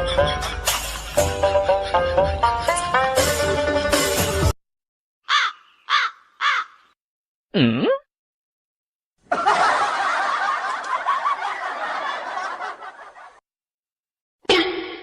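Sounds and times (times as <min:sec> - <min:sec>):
crow-like caws: 0:05.2 - 0:07.0
burst of laughter: 0:09.3 - 0:13.4.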